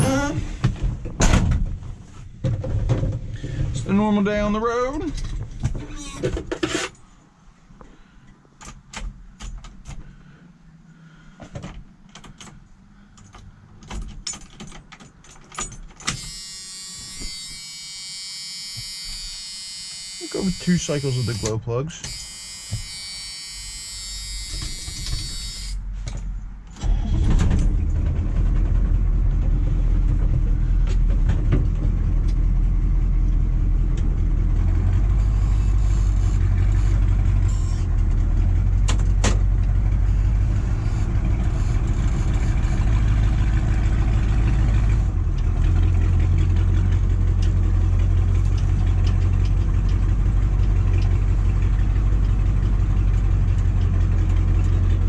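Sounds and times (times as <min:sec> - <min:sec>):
diesel engine cranking: 0:00.0 - 0:01.2, 0:24.5 - 0:55.0
diesel engine running: 0:26.8 - 0:55.0.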